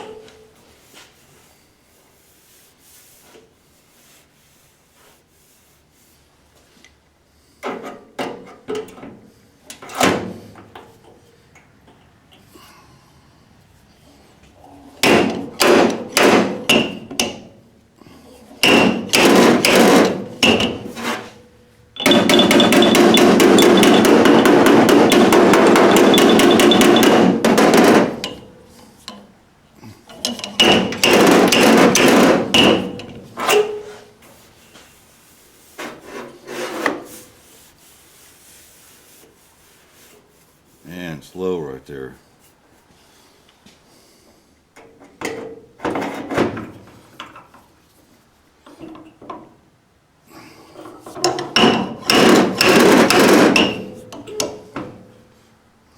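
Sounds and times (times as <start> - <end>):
dent puller metallic clacks: 22.0 - 28.5, 51.2 - 54.6.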